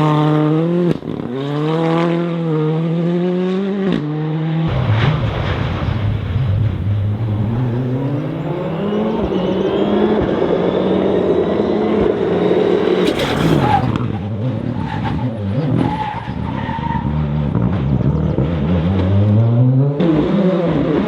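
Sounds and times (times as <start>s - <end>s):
rally car engine revving: 0.0s - 21.0s
tyres skidding: 4.7s - 17.4s.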